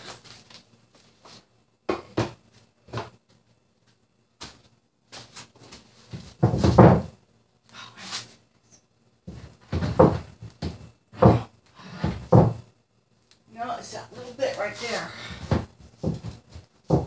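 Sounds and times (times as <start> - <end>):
cabinets knocking and clunking: 1.9 - 3.2, 6.1 - 7.2, 9.3 - 12.7, 15.2 - 17.0
heavy thump: 9.3 - 12.7.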